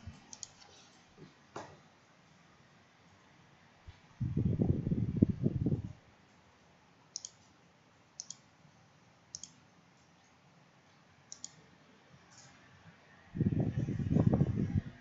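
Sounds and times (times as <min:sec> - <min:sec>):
computer mouse clicking: 0:00.2 - 0:00.7, 0:07.1 - 0:07.5, 0:08.2 - 0:08.5, 0:09.3 - 0:09.6, 0:11.3 - 0:11.6.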